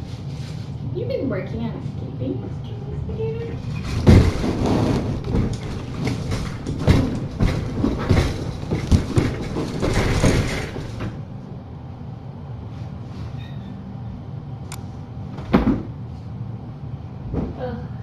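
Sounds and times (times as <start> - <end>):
knocks and bumps of handling: 3.5 - 11.3.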